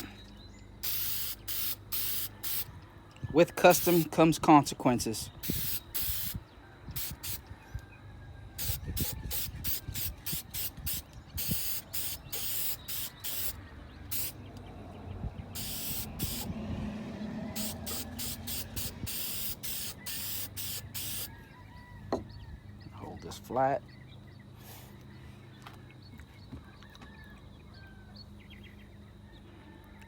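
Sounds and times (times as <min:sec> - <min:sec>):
aerosol can spraying: 0:00.8 - 0:02.7, 0:05.4 - 0:06.4, 0:07.0 - 0:07.4, 0:08.6 - 0:14.4, 0:15.6 - 0:16.5, 0:17.6 - 0:21.3.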